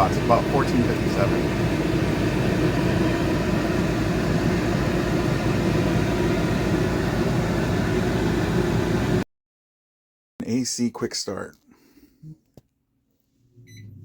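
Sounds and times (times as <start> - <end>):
air conditioner humming: 0.0 - 9.2.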